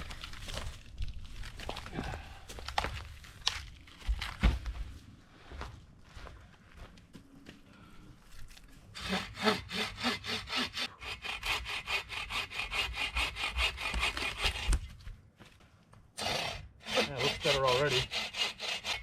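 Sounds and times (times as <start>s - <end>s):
hand saw cutting wood: 8.9s - 14.9s, 16.2s - 19.0s.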